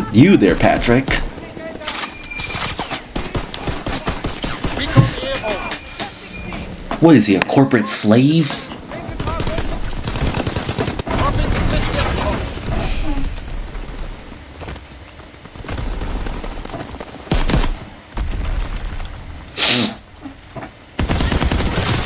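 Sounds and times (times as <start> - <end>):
game voice: 0.0 - 2.1, 3.2 - 9.8
video game gunfire: 0.0 - 19.9, 21.0 - 22.0
loud bangs: 0.0 - 22.0.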